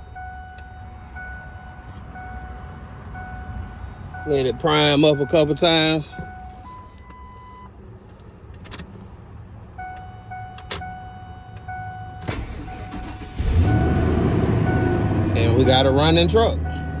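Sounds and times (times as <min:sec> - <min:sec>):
engine cranking and starting: 0:12.2 - 0:14.5.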